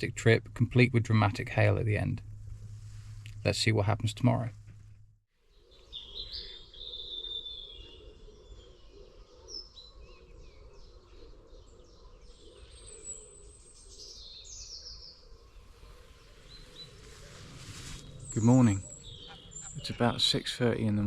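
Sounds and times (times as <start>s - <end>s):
low rumble: 0.0s - 5.2s, 15.6s - 20.3s
birds singing: 5.4s - 21.0s.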